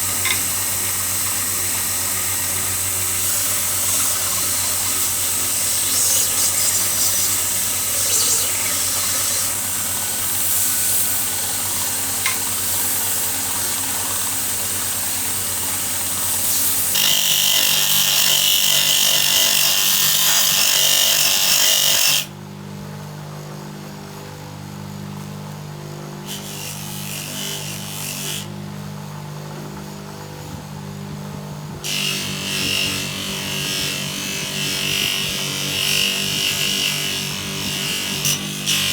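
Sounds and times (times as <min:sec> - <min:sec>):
power tool sanding metal: 0:00.0 - 0:22.3, 0:26.2 - 0:28.5, 0:31.8 - 0:38.9.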